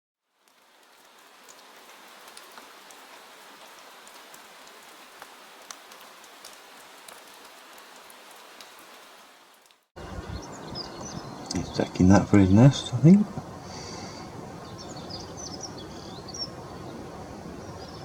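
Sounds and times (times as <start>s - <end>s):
soft rain patter: 0.2s - 18.0s
sharp raindrop ticks: 0.4s - 8.8s.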